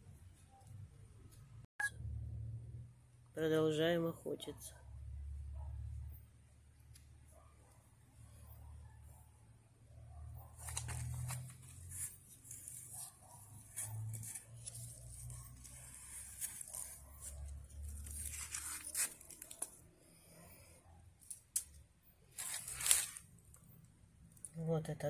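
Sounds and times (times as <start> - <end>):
hands rustling potting material: 10.5 - 19.9, 22.3 - 23.4.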